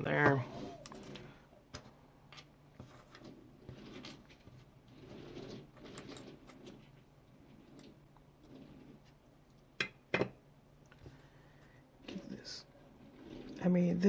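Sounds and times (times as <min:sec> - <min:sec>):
rustling of small parts and tools: 0:00.2 - 0:10.3.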